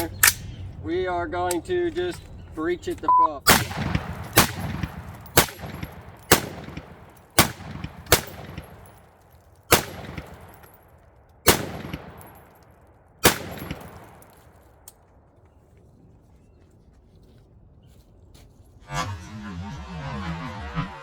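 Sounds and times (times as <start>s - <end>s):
gunshots with echo: 3.5s - 9.1s, 9.7s - 10.8s, 11.4s - 14.7s.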